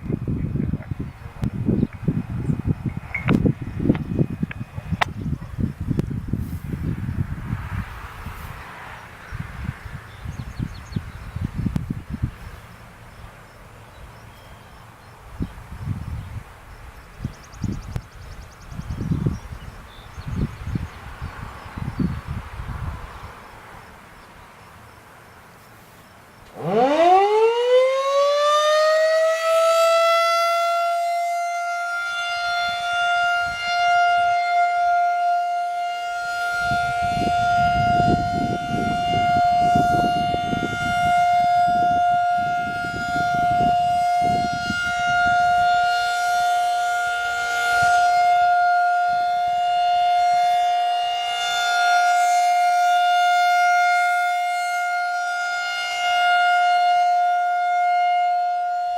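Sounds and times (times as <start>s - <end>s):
outdoor warning siren: 0.0s - 13.2s, 13.9s - 23.9s, 26.5s - 58.9s
low rumbling noise: 0.0s - 24.0s.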